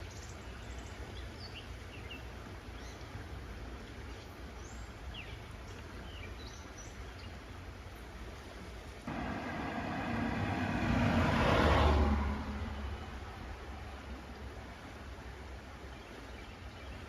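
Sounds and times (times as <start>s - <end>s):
steady outdoor hiss: 0.0s - 17.0s
low rumble: 9.1s - 14.0s.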